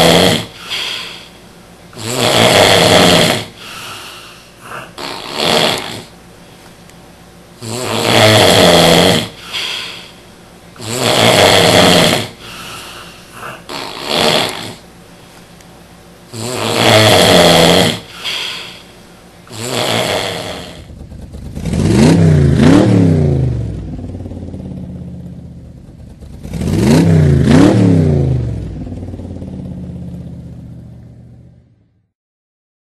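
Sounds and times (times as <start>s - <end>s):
person snoring loudly: 0.0s - 6.1s, 7.6s - 10.2s, 10.8s - 14.8s, 16.3s - 20.9s.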